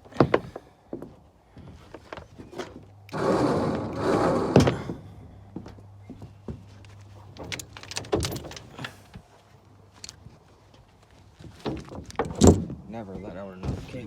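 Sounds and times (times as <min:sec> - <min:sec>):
winch cable rattling: 0:06.5 - 0:09.1, 0:11.4 - 0:14.0.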